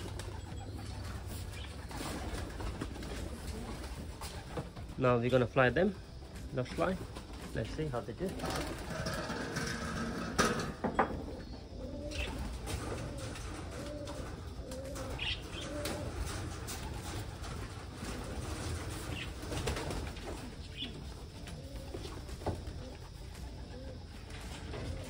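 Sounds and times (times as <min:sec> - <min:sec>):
pigeons cooing: 0:00.0 - 0:25.0.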